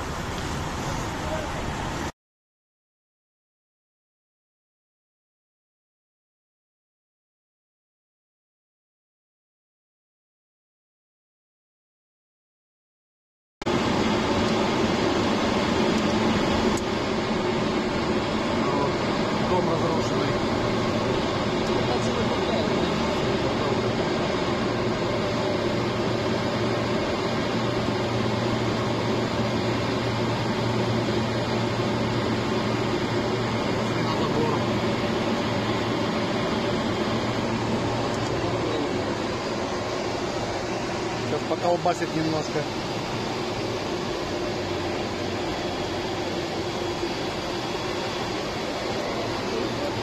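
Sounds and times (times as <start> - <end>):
jet engines droning: 0.0 - 2.1, 13.7 - 50.0
airflow: 13.7 - 50.0.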